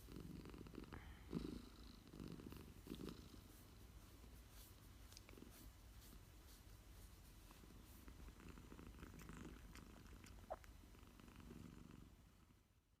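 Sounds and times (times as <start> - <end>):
cat purring: 0.0 - 12.8.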